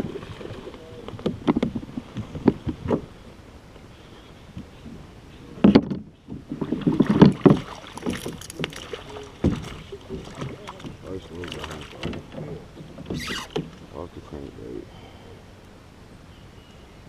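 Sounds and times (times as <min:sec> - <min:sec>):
knocks and thumps on a kayak: 0:00.0 - 0:03.1, 0:05.6 - 0:13.9.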